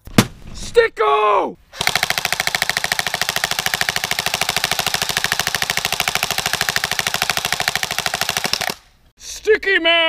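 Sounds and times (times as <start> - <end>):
airsoft gun firing full auto: 1.8 - 8.8.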